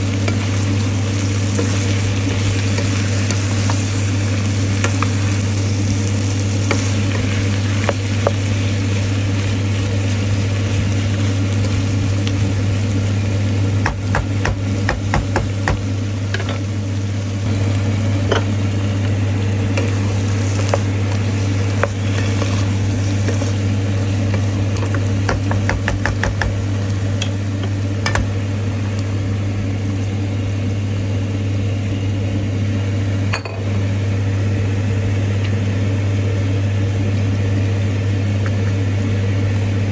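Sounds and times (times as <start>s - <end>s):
steady low hum: 0.0s - 39.9s
stir-fry sizzling in a pan: 0.0s - 39.9s
spatula scraping a pan: 19.8s - 23.7s.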